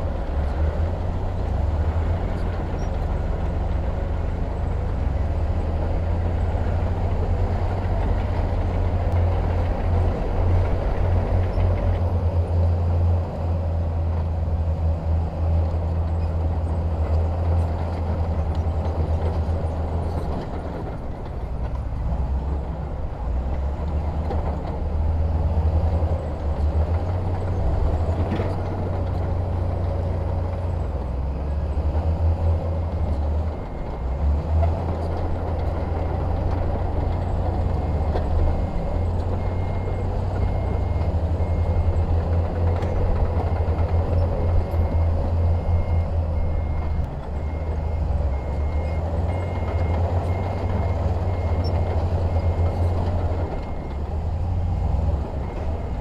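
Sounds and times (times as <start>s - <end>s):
diesel machinery engine rumbling: 0.0s - 56.0s
reversing alarm beeping: 43.4s - 54.1s.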